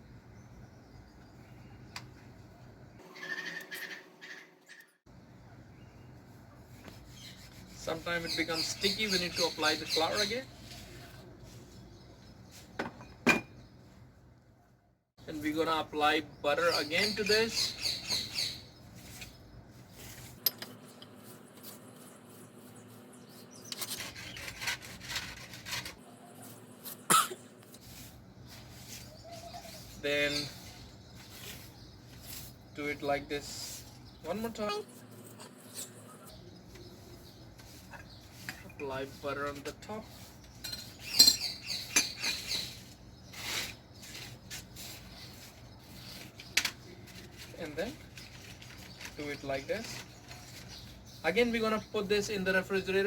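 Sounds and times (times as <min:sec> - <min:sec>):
utensil scraping pastry dough: 0:06.6 - 0:12.7, 0:17.0 - 0:26.8, 0:27.7 - 0:51.6.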